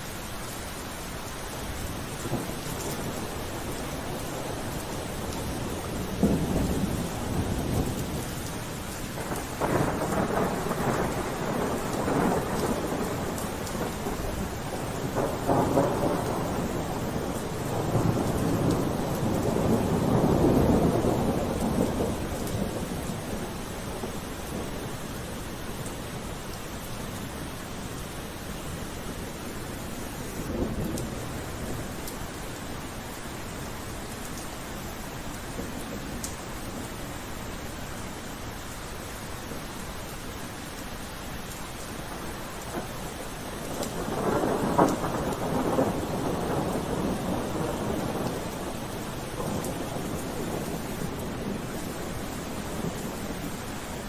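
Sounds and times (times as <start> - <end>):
steady rain hissing: 0.0 - 54.0
thunder rolling and cracking: 2.2 - 8.6, 9.2 - 24.7, 30.4 - 32.2, 42.2 - 53.7.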